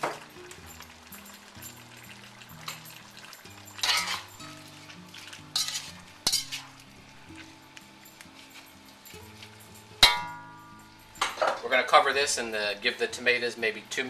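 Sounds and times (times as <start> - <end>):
metal utensil scraping a wok: 3.8 - 7.5.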